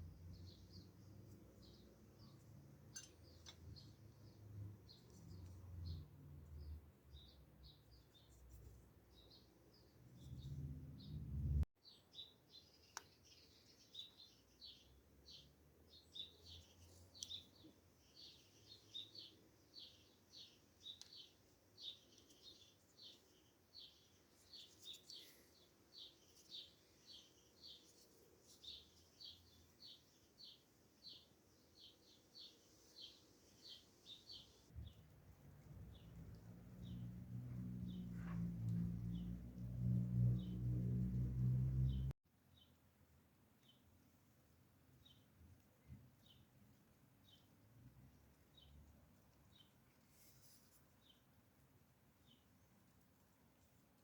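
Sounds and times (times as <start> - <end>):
bird chirping: 9.1 - 39.4.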